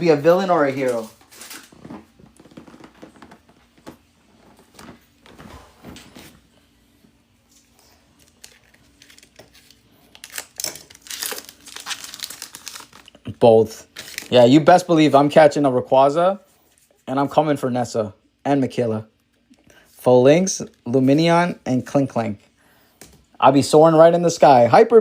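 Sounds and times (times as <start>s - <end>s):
foil wrappers crinkling and tearing: 0.3s - 3.3s, 7.6s - 14.6s.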